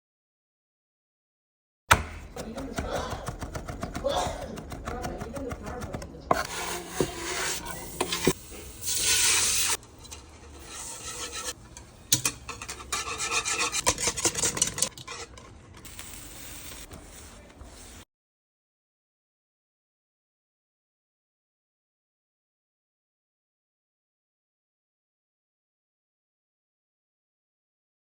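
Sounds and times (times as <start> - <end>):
scraping and rubbing: 3.4 - 18.0.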